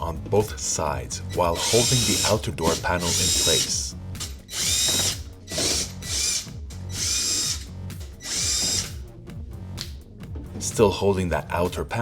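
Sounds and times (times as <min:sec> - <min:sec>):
power screwdriver whining: 0:01.5 - 0:09.0.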